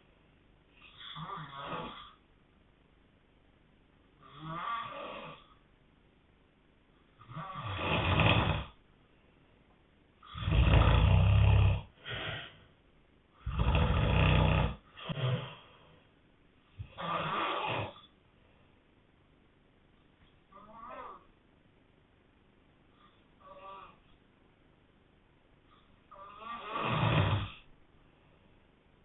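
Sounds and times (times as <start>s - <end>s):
heavy snoring: 0.8s - 2.2s, 4.2s - 5.5s, 7.2s - 8.8s, 10.2s - 12.6s, 13.4s - 15.7s, 16.8s - 18.1s, 26.1s - 27.7s.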